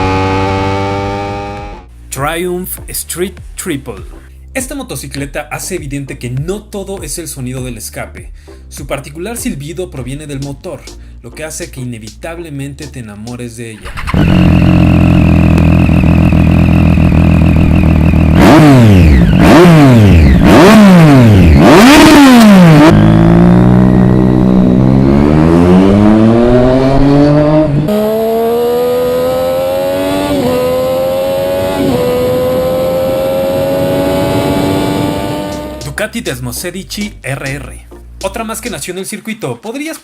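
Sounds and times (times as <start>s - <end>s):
motorcycle engine revving and accelerating: 0.0s - 1.9s, 13.8s - 35.9s.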